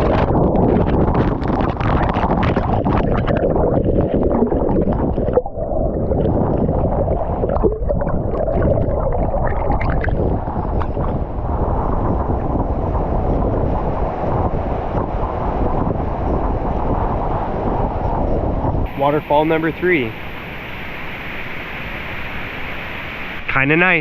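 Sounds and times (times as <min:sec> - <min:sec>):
wind rumble on microphone: 0:00.0 - 0:24.0
waterfall pouring: 0:01.0 - 0:11.2.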